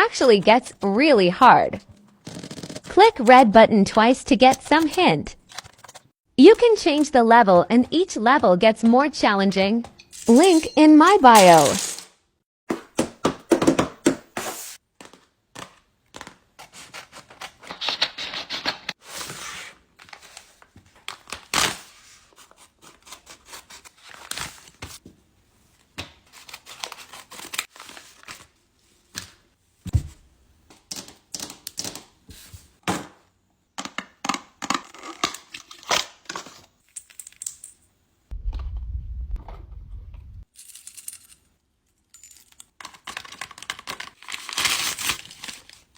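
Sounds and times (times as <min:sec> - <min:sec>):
paper tearing and crinkling: 0:11.3 - 0:12.1, 0:44.1 - 0:45.9
low rumble: 0:38.3 - 0:40.4.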